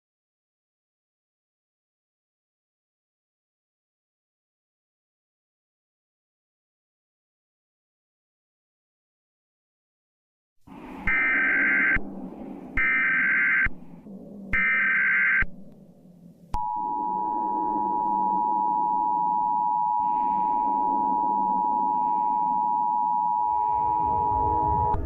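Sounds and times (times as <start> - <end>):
screeching data bursts: 11.0 - 12.0, 12.8 - 13.7, 14.5 - 15.5
two-tone attention signal: 11.1 - 12.0.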